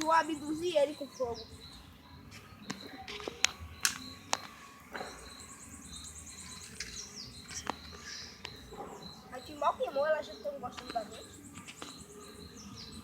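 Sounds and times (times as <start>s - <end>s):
bird calls: 0.0s - 13.0s
high insect drone: 0.0s - 13.0s
sharp clicks: 2.6s - 4.6s, 6.5s - 8.6s.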